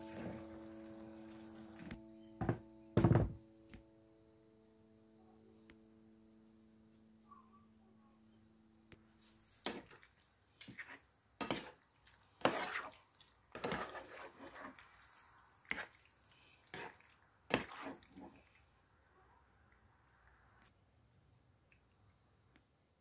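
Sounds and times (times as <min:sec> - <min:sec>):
wet squelching of creamy pasta: 0:09.6 - 0:19.0.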